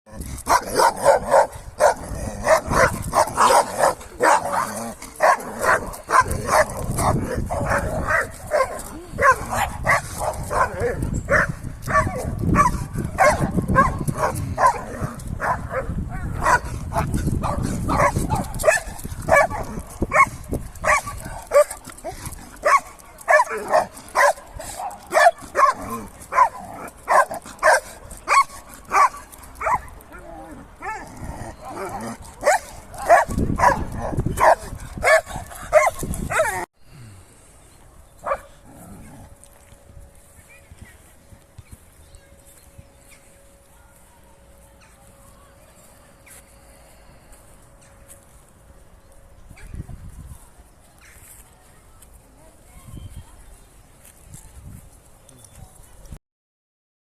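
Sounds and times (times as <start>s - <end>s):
puppy barking excitedly: 0.5s - 29.9s, 31.6s - 36.7s.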